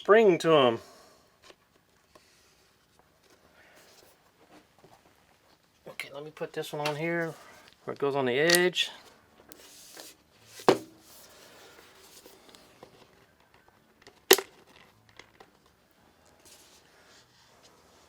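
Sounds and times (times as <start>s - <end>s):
faint handling and rustling: 1.4s - 18.0s
plastic clamp snapping shut: 14.3s - 14.6s.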